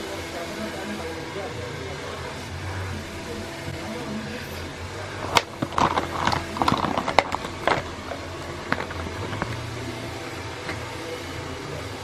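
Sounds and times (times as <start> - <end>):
steady low hum: 0.0 - 12.0
sharp clicks taps and rustles: 5.2 - 9.6.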